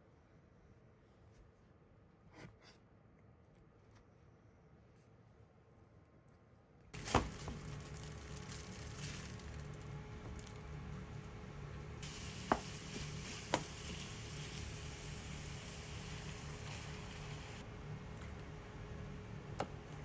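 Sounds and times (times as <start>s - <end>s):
food sizzling in a pan: 7.0s - 10.8s, 12.0s - 17.6s.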